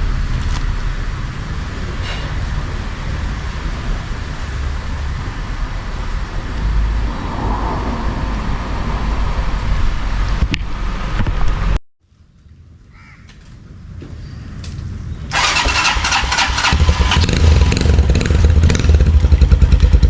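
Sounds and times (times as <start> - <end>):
car road and engine noise: 0.0 - 11.8, 14.8 - 20.0.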